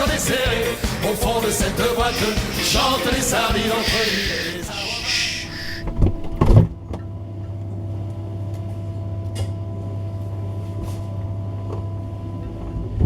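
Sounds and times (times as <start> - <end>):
faint high tones: 2.1 - 6.3.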